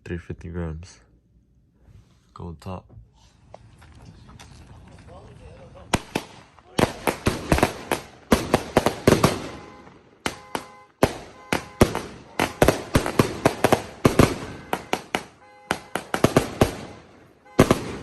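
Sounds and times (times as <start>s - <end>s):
firework bangs: 5.9s - 18.0s.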